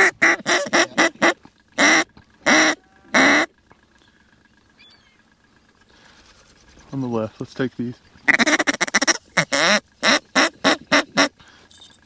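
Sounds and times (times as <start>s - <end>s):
duck call quacks: 0.0s - 3.5s, 8.3s - 11.4s.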